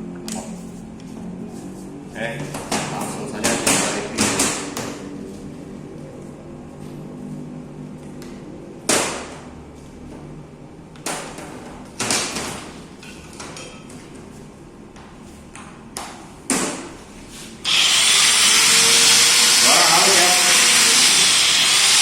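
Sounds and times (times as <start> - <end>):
angle grinder motor running: 17.6 - 22.0.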